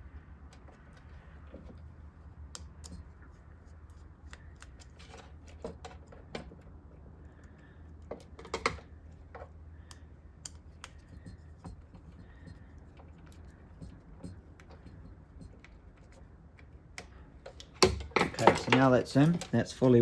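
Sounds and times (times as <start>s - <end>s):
steady low hum: 0.0s - 20.0s
screwdriver clicks and scrapes: 7.9s - 19.6s.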